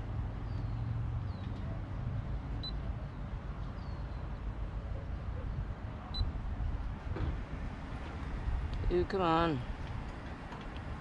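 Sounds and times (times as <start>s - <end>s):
wind rumble on microphone: 3.3s - 11.0s.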